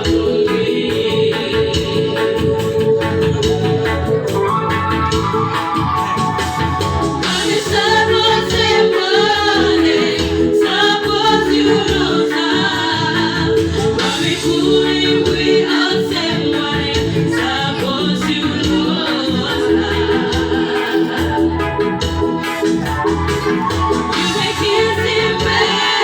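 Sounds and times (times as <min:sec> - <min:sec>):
keyboard accompaniment: 0:00.0 - 0:26.0
person singing: 0:07.3 - 0:21.7.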